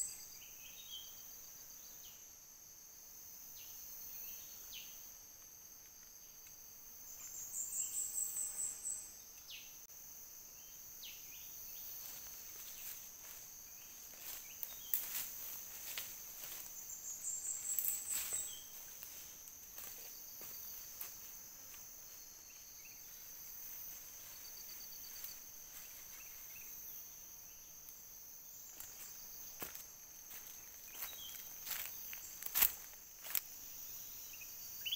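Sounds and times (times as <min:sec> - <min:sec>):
high-pitched insect drone: 0:10.6 - 0:34.9.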